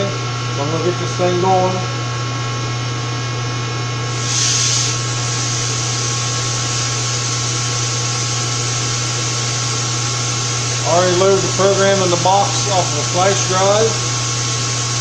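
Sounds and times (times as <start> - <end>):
milling machine electrical hum: 0.0 - 15.0
brief hiss: 4.2 - 9.9.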